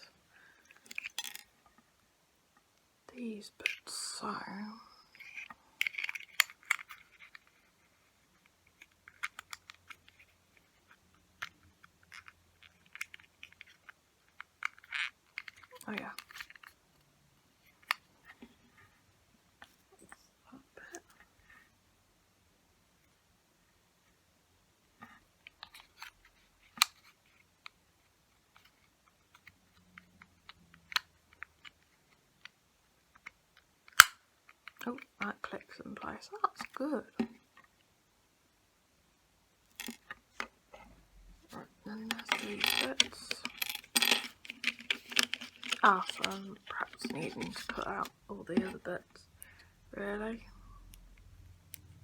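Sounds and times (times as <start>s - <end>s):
plastic parts clicking: 0.7s - 1.5s, 5.2s - 7.6s, 11.4s - 16.8s, 33.2s - 35.0s, 39.7s - 40.5s, 42.0s - 48.9s.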